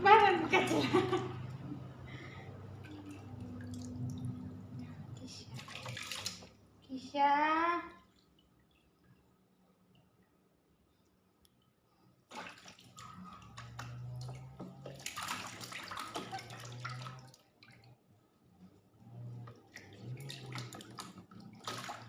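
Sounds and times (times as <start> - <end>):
bath water splashing: 0.0 - 6.8, 12.3 - 17.9, 19.4 - 22.0.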